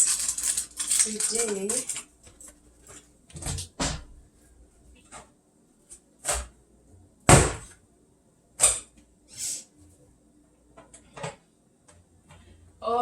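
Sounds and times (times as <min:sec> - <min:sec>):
kitchen knocks and clunks: 0:03.3 - 0:04.2, 0:07.2 - 0:07.8.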